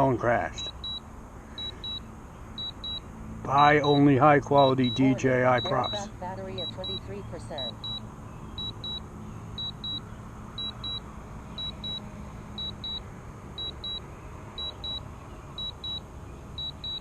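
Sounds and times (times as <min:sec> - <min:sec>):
low steady hum: 0:00.0 - 0:17.0
remote controller double beeps: 0:04.6 - 0:07.0, 0:16.6 - 0:17.0.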